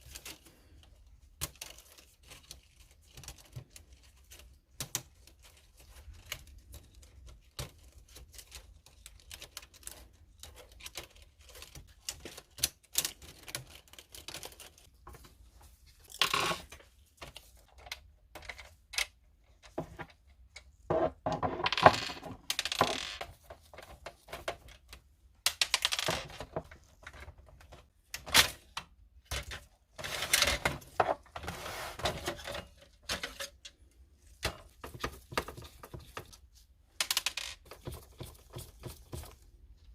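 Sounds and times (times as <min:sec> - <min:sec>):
printer parts clicking and rattling: 0:32.1 - 0:39.3.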